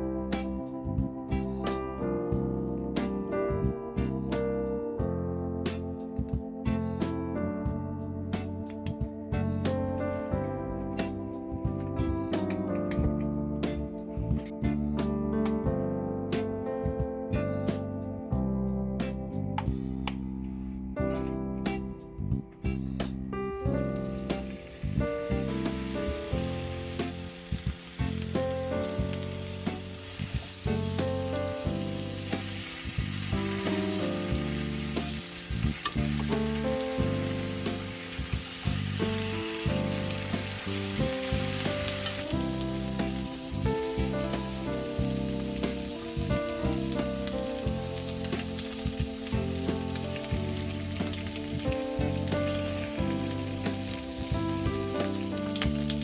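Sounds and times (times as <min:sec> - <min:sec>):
piano background music: 0:00.0 - 0:56.0
food sizzling in a pan: 0:24.2 - 0:56.0.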